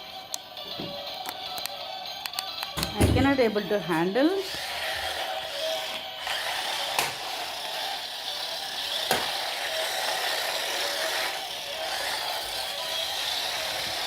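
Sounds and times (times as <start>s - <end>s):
toy car motor and gears whirring: 3.9s - 14.0s.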